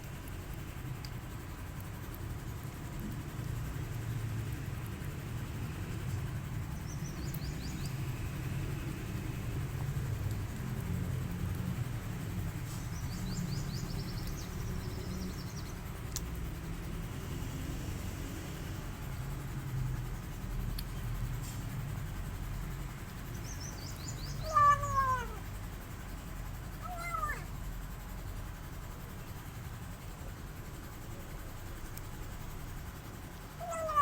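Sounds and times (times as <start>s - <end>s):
kitten meowing: 24.4s - 25.5s, 26.8s - 27.5s, 33.6s - 34.0s.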